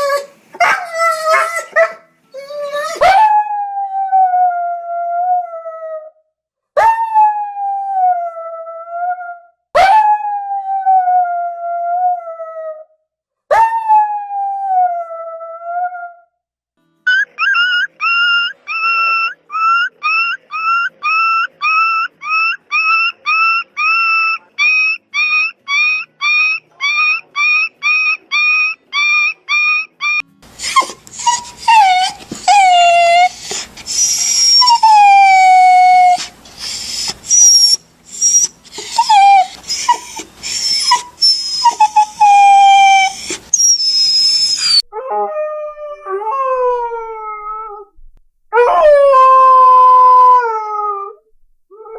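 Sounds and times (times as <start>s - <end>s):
dog whimpering and whining: 17.1s - 47.9s.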